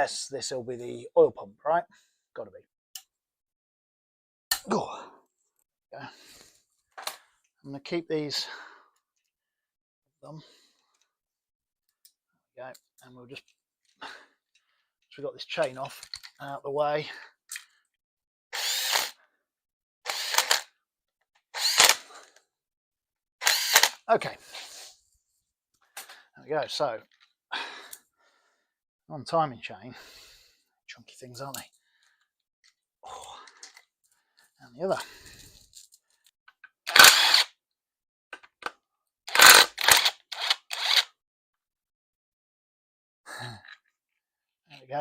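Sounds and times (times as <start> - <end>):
cordless drill bursts: 18.5 - 19.2, 20.1 - 20.7, 21.5 - 22.1, 23.4 - 24.0, 36.9 - 37.5, 39.3 - 41.1.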